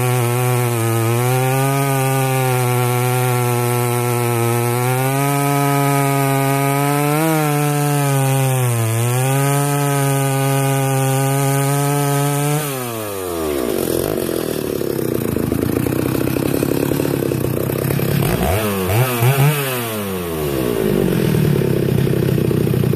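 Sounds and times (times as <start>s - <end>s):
chainsaw revving and idling: 0.0s - 22.9s.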